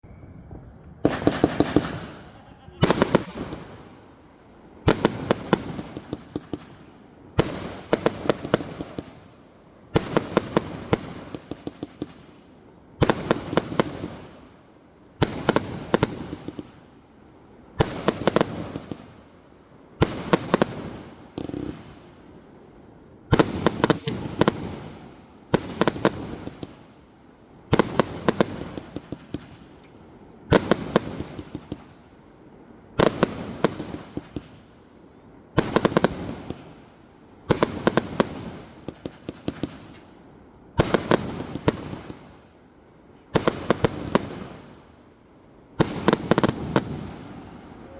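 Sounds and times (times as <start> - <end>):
firework bangs in volleys: 1.0 - 3.9, 4.9 - 9.3, 23.3 - 26.9, 27.7 - 29.8, 30.5 - 32.0, 33.0 - 34.7, 35.5 - 36.8, 37.5 - 40.2, 40.8 - 42.5, 45.8 - 47.4.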